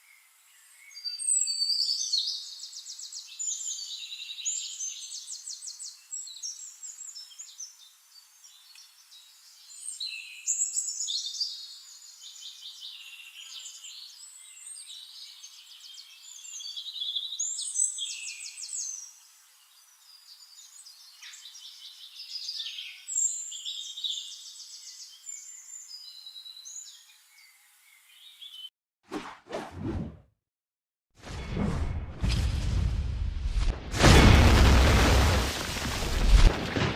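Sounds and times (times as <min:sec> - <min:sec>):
songbirds trilling and chirping: 0:00.0 - 0:28.7.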